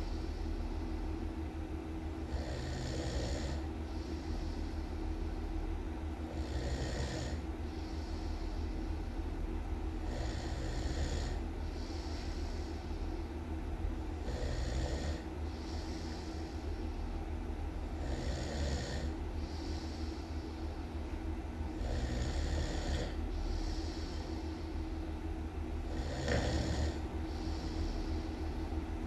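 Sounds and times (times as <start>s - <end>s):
steady low rumble: 0.0s - 2.7s, 3.3s - 29.0s
person snoring loudly: 2.3s - 3.6s, 6.3s - 7.4s, 10.0s - 12.2s, 14.2s - 16.3s, 18.0s - 19.9s, 21.8s - 24.3s, 25.8s - 28.1s.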